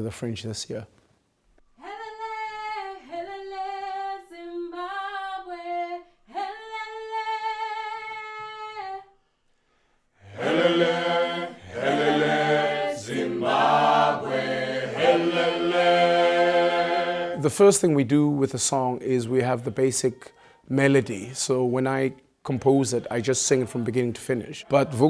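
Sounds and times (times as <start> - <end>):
a cappella choir singing: 1.8 - 9.1, 10.2 - 17.5, 22.8 - 25.0.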